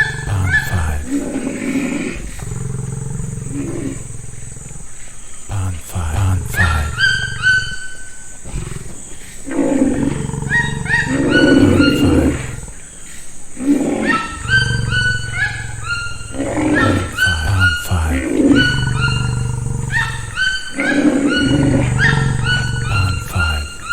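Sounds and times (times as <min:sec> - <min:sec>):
big cat growling and roaring: 0:00.0 - 0:13.0, 0:13.6 - 0:23.9.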